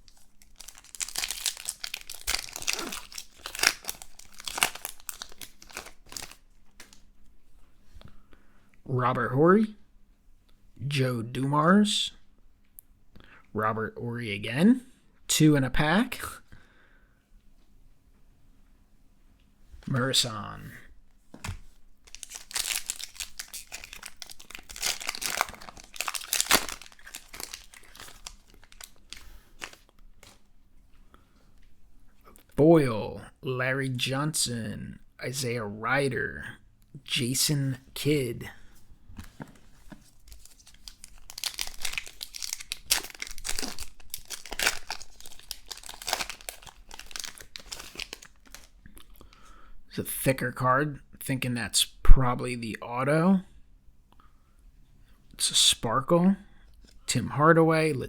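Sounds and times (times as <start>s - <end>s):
foil wrapper crinkling and tearing: 0.0s - 7.0s, 21.4s - 30.5s, 40.0s - 48.8s
cards rustling and clicking: 0.0s - 7.1s, 21.3s - 30.5s, 39.2s - 48.8s.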